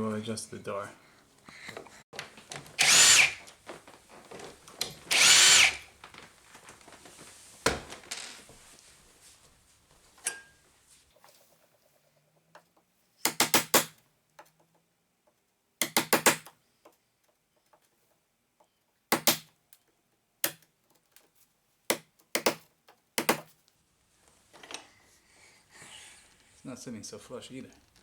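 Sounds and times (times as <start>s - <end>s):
hammer tapping a chisel: 18.6s - 19.5s, 21.9s - 22.6s, 23.2s - 23.5s.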